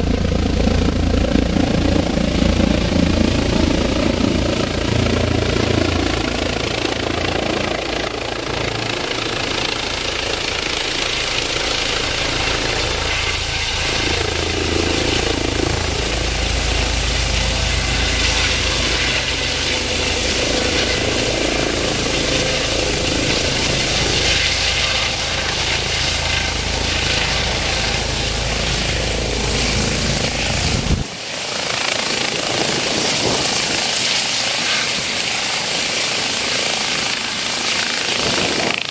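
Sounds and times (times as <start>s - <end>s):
helicopter rotor and turbine noise: 0.0s - 38.9s
high turbine whine: 0.0s - 38.9s.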